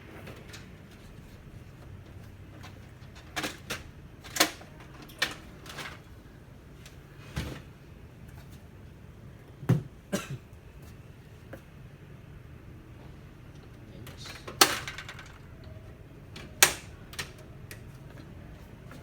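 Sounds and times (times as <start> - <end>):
clicks and knocks of printer parts: 0.0 - 6.2, 13.6 - 19.0.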